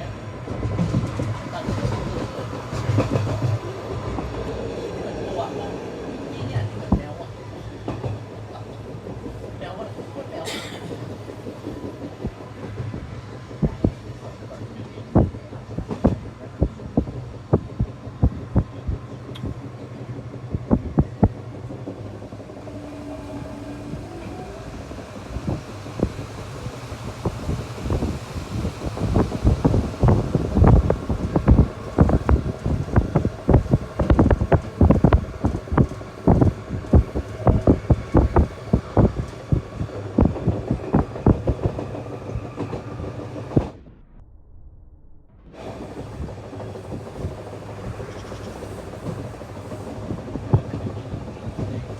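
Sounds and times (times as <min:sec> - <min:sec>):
train running hum: 0:00.0 - 0:44.2, 0:45.3 - 0:51.9
wheels clacking over rail joints: 0:06.3 - 0:43.8.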